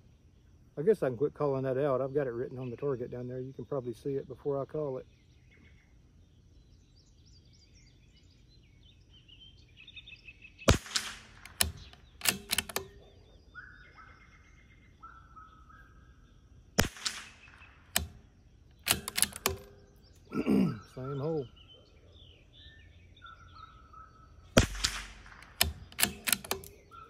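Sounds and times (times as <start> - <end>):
birds chirping: 0.0 - 27.0
rifle shots: 10.7 - 13.1, 16.8 - 20.1, 24.5 - 26.9
rifle bolt clacks: 10.7 - 13.2, 16.8 - 20.3, 24.5 - 27.0.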